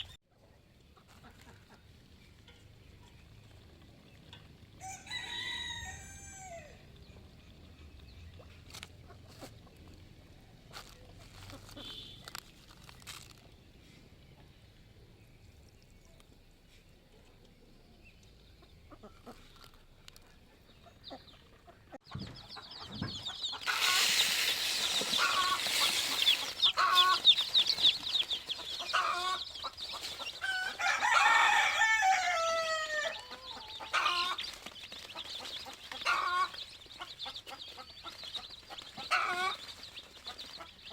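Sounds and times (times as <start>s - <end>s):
chicks peeping: 15.2s - 40.9s
hen clucking: 18.6s - 40.9s.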